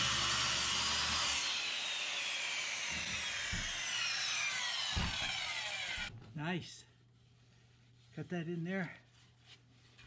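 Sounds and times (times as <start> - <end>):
power saw cutting wood: 0.0 - 6.1.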